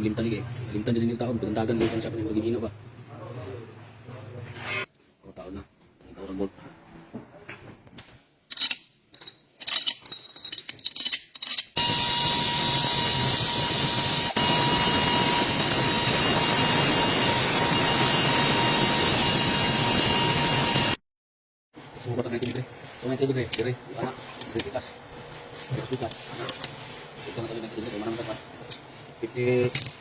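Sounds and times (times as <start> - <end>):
workshop machine whining: 11.8 - 21.0.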